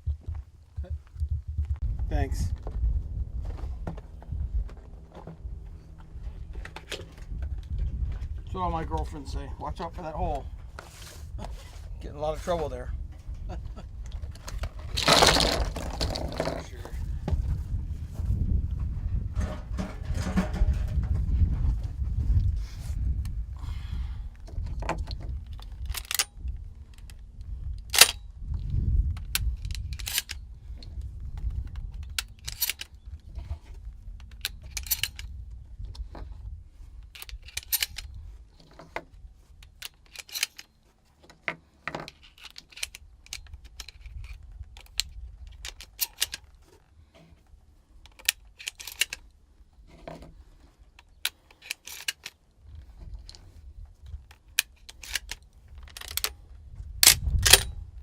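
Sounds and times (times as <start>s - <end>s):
low rumble: 0.0s - 32.2s.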